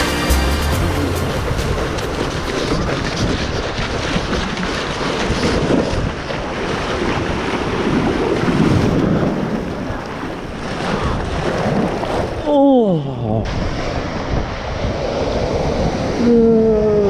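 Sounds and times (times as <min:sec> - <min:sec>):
ocean waves breaking: 0:00.0 - 0:17.0
wind buffeting microphone: 0:00.7 - 0:12.4, 0:13.4 - 0:17.0.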